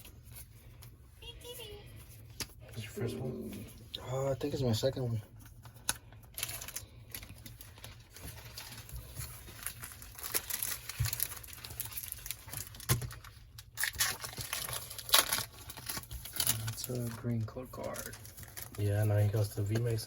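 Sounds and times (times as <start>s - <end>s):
foil wrapper crinkling and tearing: 5.4s - 20.0s.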